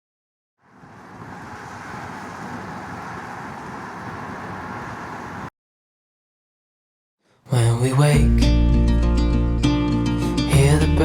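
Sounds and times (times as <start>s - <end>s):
rushing ambient rumble and hiss: 0.6s - 5.5s.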